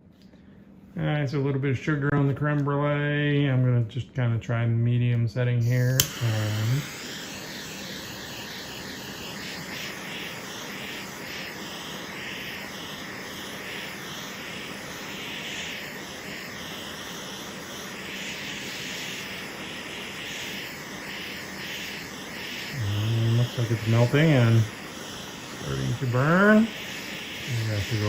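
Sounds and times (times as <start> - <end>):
torch flame hissing: 5.6 - 28.0.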